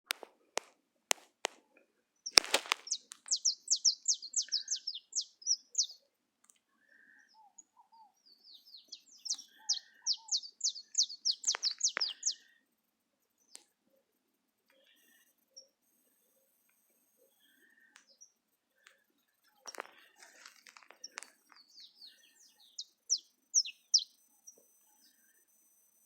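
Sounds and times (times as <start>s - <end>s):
canaries singing: 2.2s - 6.0s, 6.9s - 12.6s, 19.6s - 24.2s.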